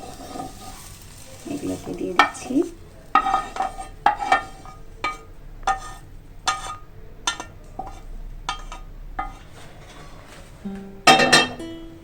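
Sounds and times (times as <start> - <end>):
spoon clinking against dish: 3.1 - 9.4, 11.1 - 11.6.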